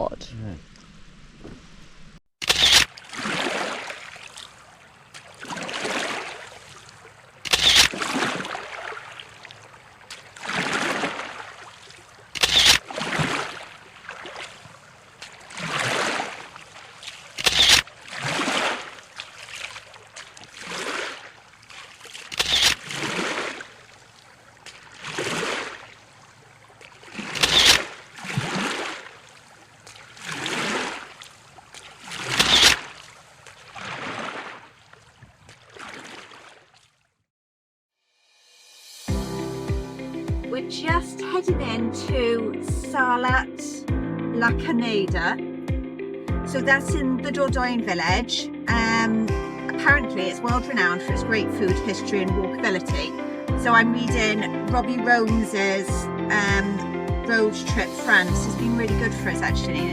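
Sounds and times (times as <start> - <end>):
paddle swishing through water: 0.9 - 37.2.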